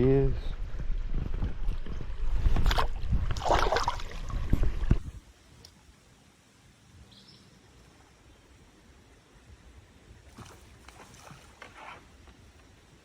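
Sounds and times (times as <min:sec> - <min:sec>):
creek ambience: 0:00.0 - 0:13.0
water splashing: 0:01.8 - 0:05.2, 0:10.1 - 0:12.2.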